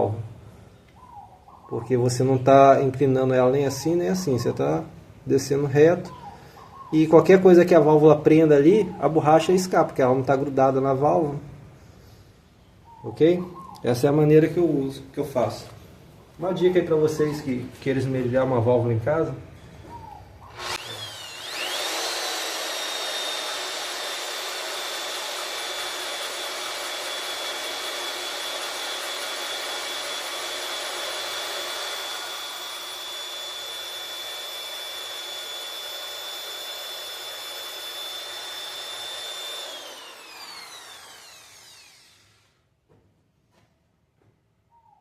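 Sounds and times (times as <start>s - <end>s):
electric drill whining: 20.4s - 42.6s.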